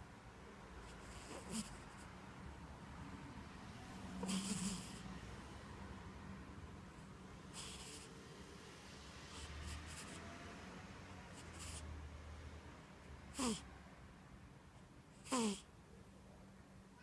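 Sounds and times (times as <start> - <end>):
cat snoring: 0.8 - 2.2, 4.1 - 5.3, 7.5 - 8.4, 9.2 - 12.0, 13.3 - 13.8, 15.2 - 15.7.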